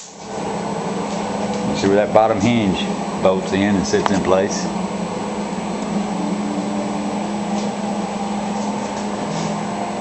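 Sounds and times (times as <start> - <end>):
machine hum: 0.0 - 10.0.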